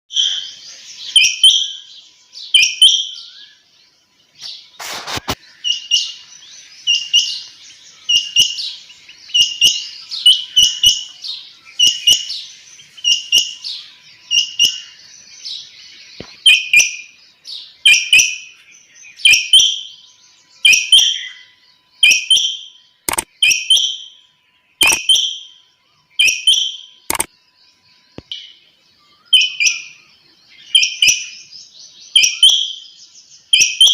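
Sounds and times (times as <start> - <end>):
quail chirping call: 4.4 - 18.5, 24.8 - 27.3
sharp clicks: 23.1 - 23.3, 24.8 - 25.1, 27.1 - 27.3.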